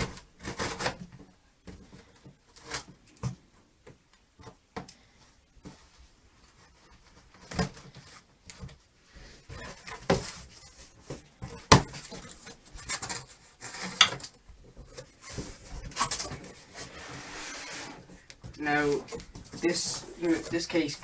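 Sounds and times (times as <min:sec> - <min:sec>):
cardboard rustling and scraping: 0:05.6 - 0:21.0.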